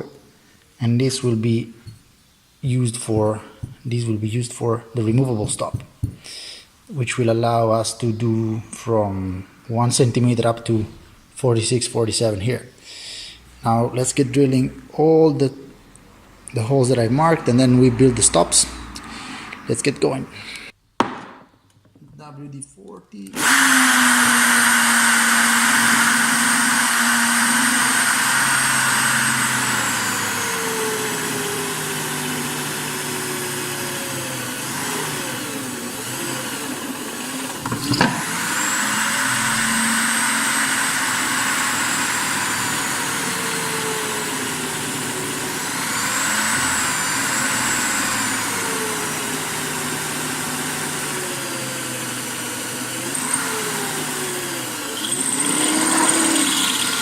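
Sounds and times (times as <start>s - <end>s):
electric drill boring metal: 23.4s - 57.0s.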